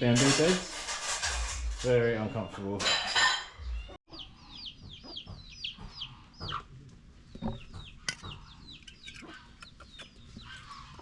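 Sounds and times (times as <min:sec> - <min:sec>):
chicks peeping: 0:03.6 - 0:11.0.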